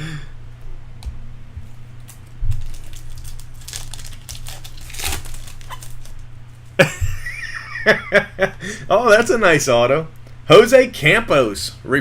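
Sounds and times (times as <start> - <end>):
plastic wrappers crinkling and tearing: 2.0 - 6.3.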